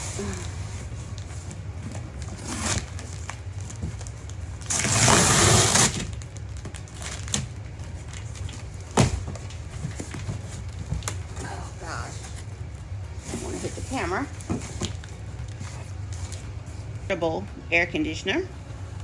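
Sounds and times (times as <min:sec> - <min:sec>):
steady low hum: 0:00.0 - 0:19.0
cardboard box scraping and rustling: 0:04.7 - 0:06.1.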